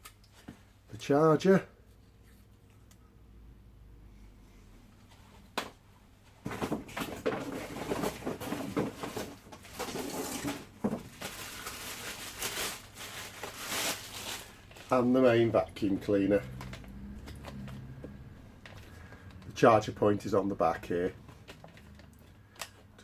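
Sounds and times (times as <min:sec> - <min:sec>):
packaging rustling and crinkling: 0:06.5 - 0:23.0.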